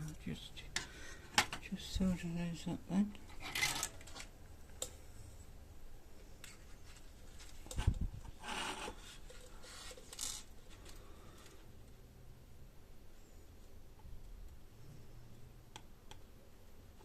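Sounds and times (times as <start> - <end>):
rubbing and scraping on workbench: 8.4 - 10.0.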